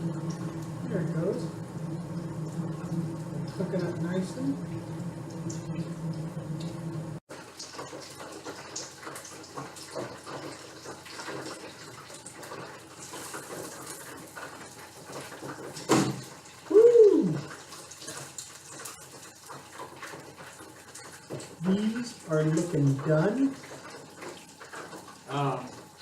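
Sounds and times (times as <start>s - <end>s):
fish deep frying in oil: 0.0s - 26.0s
person vocalizing: 16.7s - 17.5s.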